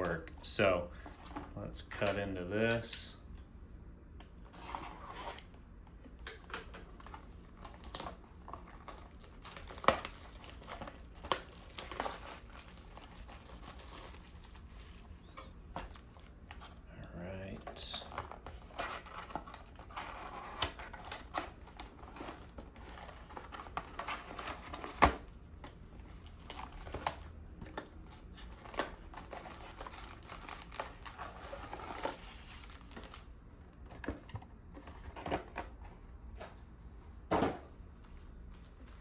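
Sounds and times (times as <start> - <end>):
plastic wrapping crinkling: 7.5 - 16.0, 28.7 - 33.3.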